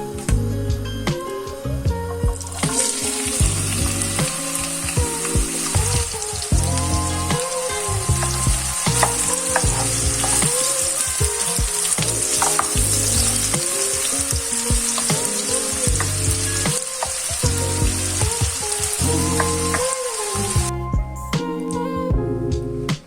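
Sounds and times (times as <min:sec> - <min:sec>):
food sizzling in a pan: 0:02.4 - 0:20.7
utensil clicking against pan: 0:12.0 - 0:13.0.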